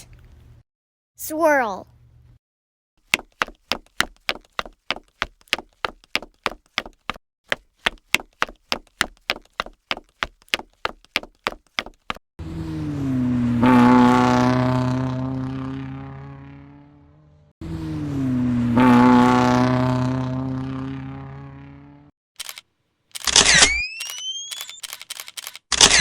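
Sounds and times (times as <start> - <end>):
sharp evenly spaced clicks: 24.0 - 25.6.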